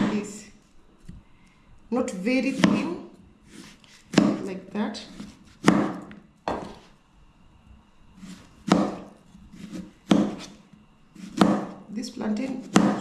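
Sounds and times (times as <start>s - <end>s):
knife knocking on cutting board: 6.5s - 6.8s.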